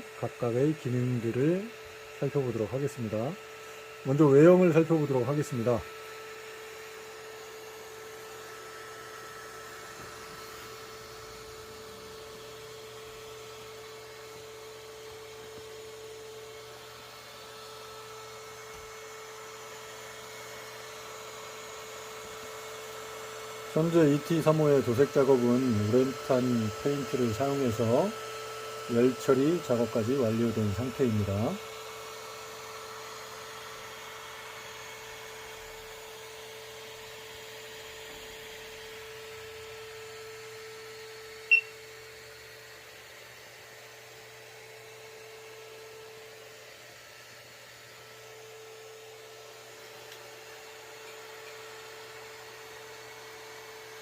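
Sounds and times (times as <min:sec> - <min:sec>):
electrical hum: 0:00.0 - 0:54.0
high electronic beep: 0:41.5 - 0:41.7.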